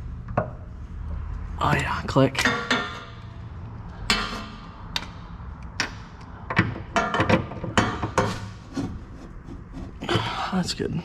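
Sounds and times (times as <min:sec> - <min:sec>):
hand tools clanking on metal: 0:02.4 - 0:03.2, 0:04.0 - 0:04.7, 0:05.8 - 0:08.6.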